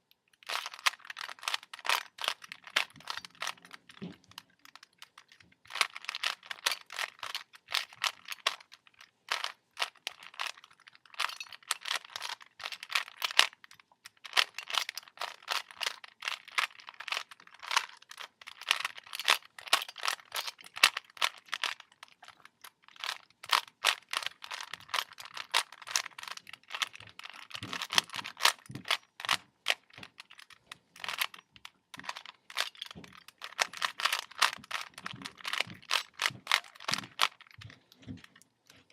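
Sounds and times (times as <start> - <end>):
puzzle cube layers clicking: 0.4 - 3.9, 22.9 - 31.4, 32.0 - 37.6.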